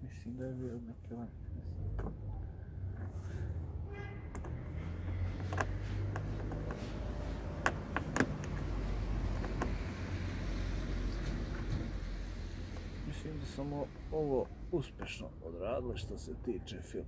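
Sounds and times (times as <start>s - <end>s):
sharp clicks and knocks: 4.3s - 10.0s.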